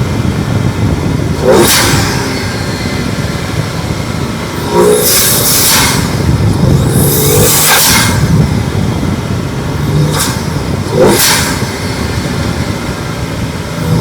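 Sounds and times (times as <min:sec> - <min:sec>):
car engine revving: 0:00.0 - 0:14.0
road and wind noise: 0:00.0 - 0:14.0
turbo whooshes: 0:04.4 - 0:12.8.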